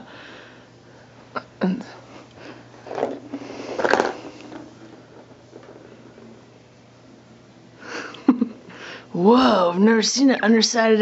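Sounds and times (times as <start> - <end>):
faint steady hum: 0.0 - 11.0.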